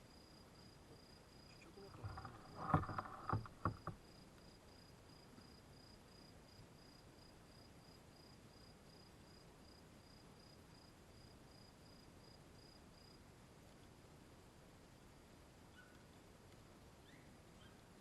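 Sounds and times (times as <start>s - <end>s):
insect chirping: 0.1s - 13.2s.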